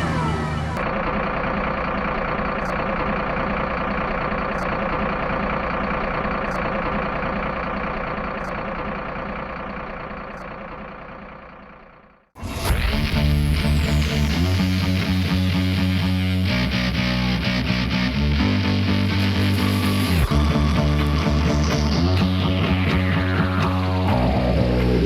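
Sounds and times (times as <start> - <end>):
truck engine running: 0.0 - 25.0.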